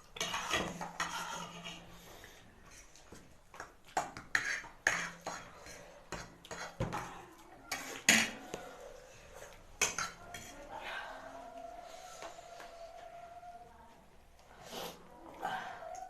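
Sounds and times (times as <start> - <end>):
cutlery clinking on plates: 9.8 - 10.6.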